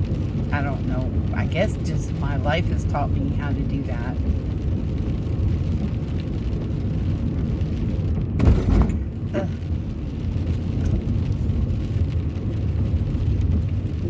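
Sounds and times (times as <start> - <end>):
car road noise rumble: 0.0 - 14.0.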